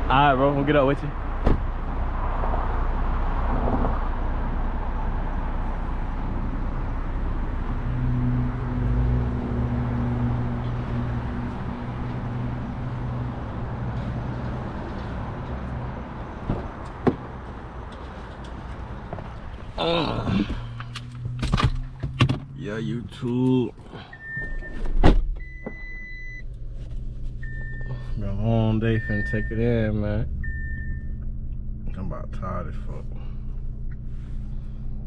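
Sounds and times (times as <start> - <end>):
low road rumble: 0.0 - 35.0
vehicle engine running: 4.8 - 23.4, 26.4 - 35.0.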